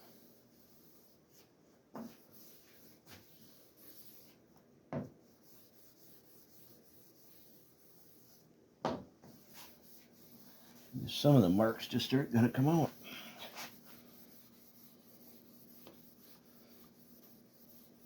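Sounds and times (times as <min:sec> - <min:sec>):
sanding block rubbing on metal: 0:12.7 - 0:18.0.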